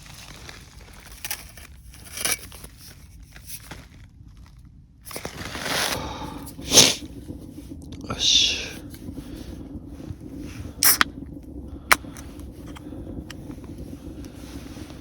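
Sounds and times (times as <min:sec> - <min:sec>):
crinkling and rustling: 0:00.0 - 0:08.0.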